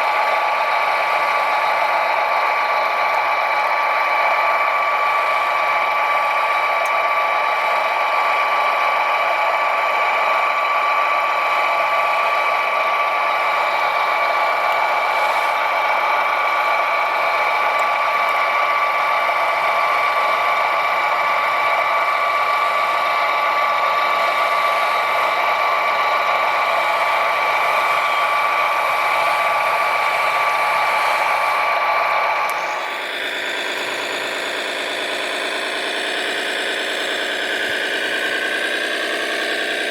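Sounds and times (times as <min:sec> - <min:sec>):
small electric motor whine: 0:13.3 - 0:39.9.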